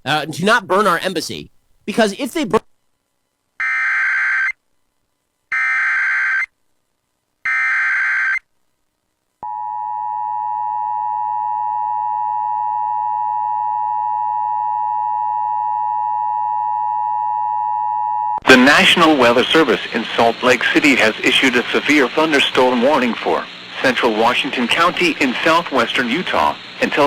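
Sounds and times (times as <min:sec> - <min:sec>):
steady attention tone: 0:09.4 - 0:27.0
digital data bursts: 0:18.5 - 0:27.0.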